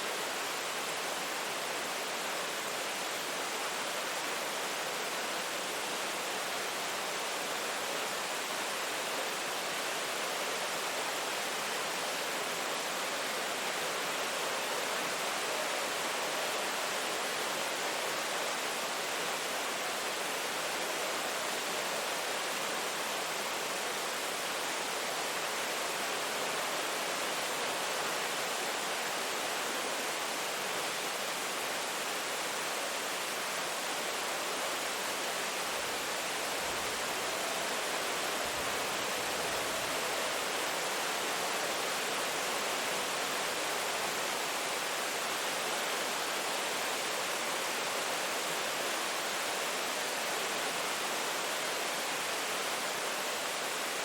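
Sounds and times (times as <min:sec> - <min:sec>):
steady rain falling: 0:00.0 - 0:54.0.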